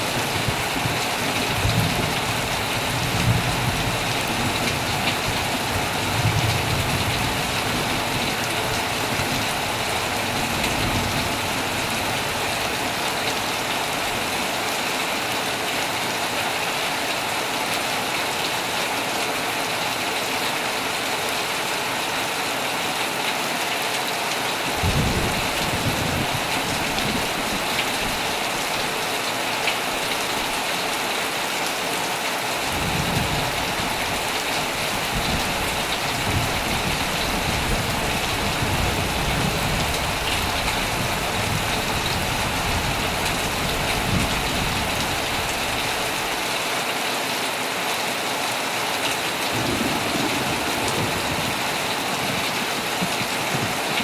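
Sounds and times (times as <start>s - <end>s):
thunder rumbling: 0.0s - 13.2s, 24.8s - 28.4s, 32.7s - 45.9s, 49.5s - 54.0s
heavy rain on a tent: 0.0s - 54.0s.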